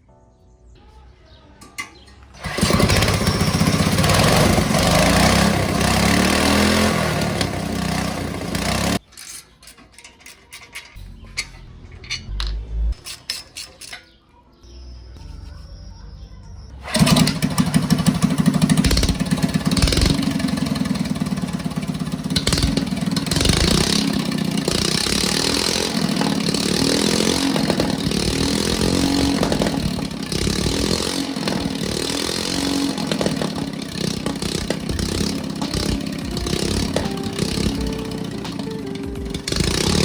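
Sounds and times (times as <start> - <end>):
go-kart engine running: 2.4 - 9.0, 16.7 - 40.0.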